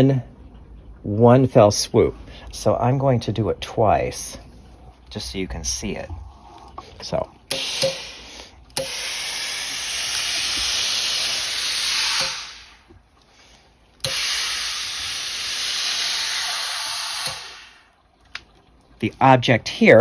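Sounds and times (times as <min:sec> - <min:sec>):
steam iron hissing: 0:07.5 - 0:12.8, 0:14.0 - 0:17.8.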